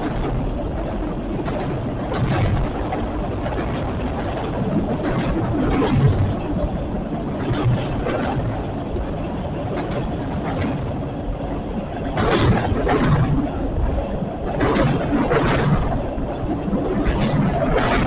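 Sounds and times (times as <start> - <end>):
wheels clicking over rail joints: 0.0 - 18.0.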